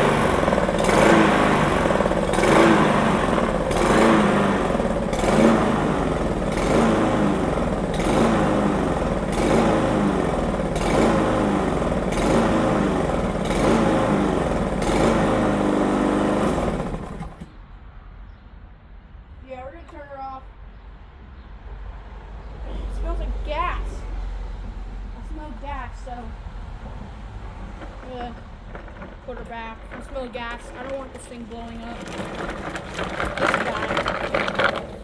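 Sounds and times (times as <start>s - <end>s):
lawn mower engine running: 0.0s - 17.5s, 26.0s - 35.0s.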